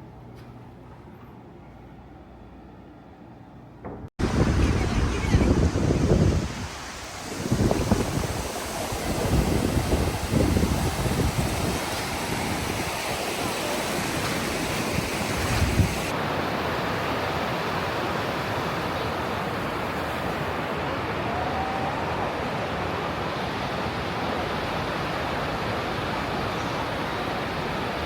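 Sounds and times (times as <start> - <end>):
wind buffeting microphone: 4.2 - 16.2
ocean surf washing onto beach: 4.2 - 28.0.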